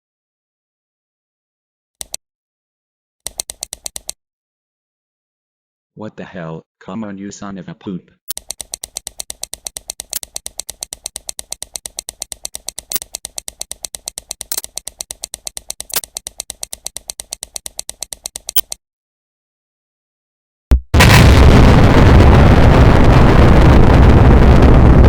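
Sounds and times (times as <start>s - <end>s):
rapid button clicking: 3.3s - 4.2s, 8.3s - 18.8s.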